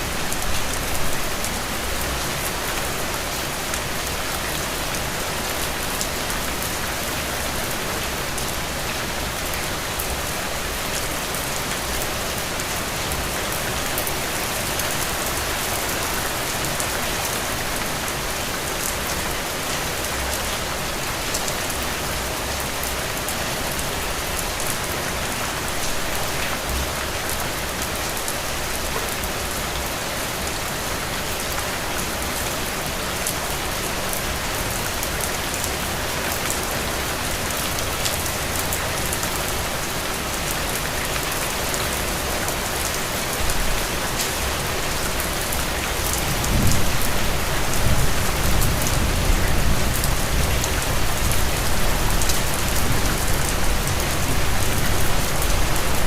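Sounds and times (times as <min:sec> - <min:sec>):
rain pattering: 0:00.0 - 0:56.0.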